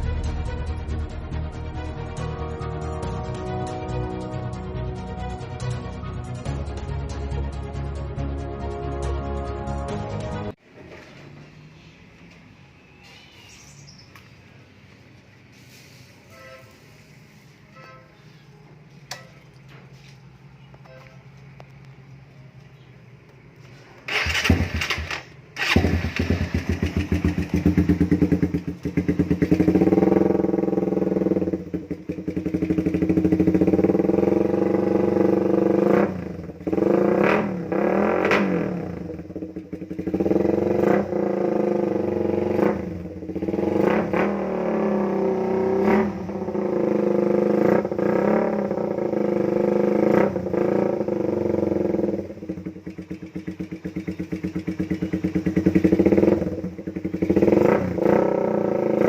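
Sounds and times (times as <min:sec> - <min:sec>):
motorcycle engine revving: 0:24.0 - 0:59.0.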